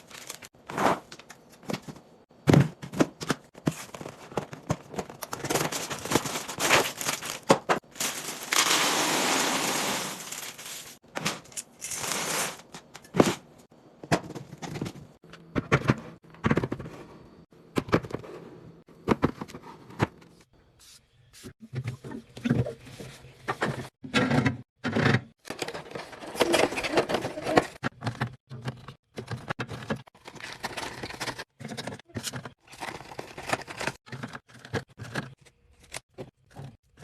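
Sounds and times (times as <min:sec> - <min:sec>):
packaging crinkling: 0:05.4 - 0:11.0.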